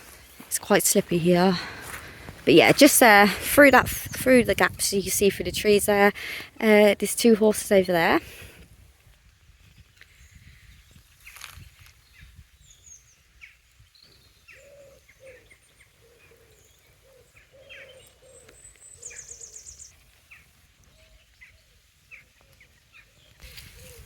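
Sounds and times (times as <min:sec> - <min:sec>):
songbirds chirping: 0:00.0 - 0:08.6, 0:09.8 - 0:24.0
bird cooing: 0:14.5 - 0:19.8, 0:23.4 - 0:24.0.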